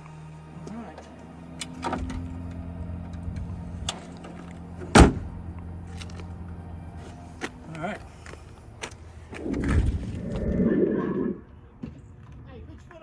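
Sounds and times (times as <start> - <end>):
car panel slamming shut: 4.9 - 5.3
steady low hum: 8.6 - 11.7.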